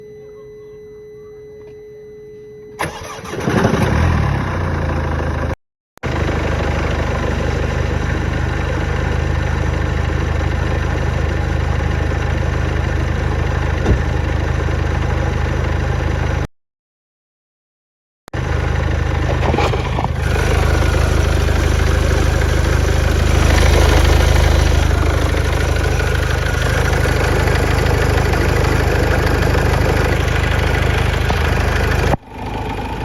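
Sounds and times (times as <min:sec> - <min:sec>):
starter motor cranking: 0:02.8 - 0:04.3, 0:19.1 - 0:32.4
diesel engine idling: 0:02.8 - 0:16.5, 0:18.4 - 0:33.0.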